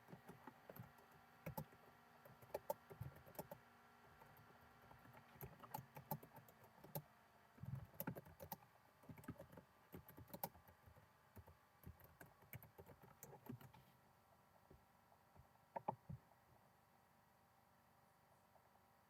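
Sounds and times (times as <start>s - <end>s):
typing on a computer keyboard: 0.0s - 7.0s, 7.6s - 13.8s, 15.8s - 16.1s.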